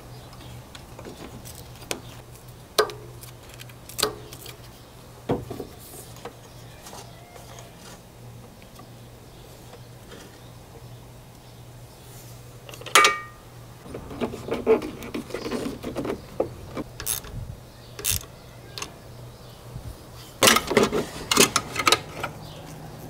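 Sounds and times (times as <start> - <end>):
metal tools clinking and rattling: 12.7 - 14.3.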